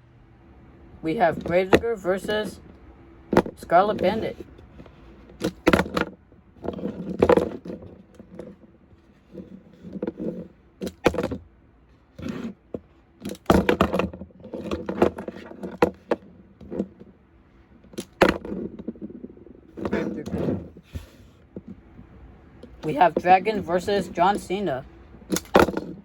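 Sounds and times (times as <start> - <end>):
plastic toys knocking and clattering: 1.2 - 11.5, 12.2 - 26.0.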